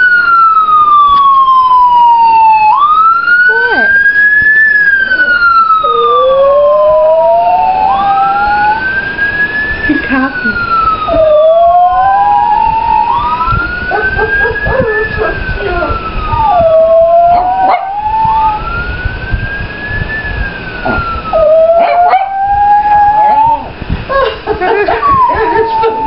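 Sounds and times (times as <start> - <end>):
police siren wailing: 0.0 - 26.0
dog howling and yipping: 11.0 - 18.1, 21.0 - 24.3, 24.9 - 26.0.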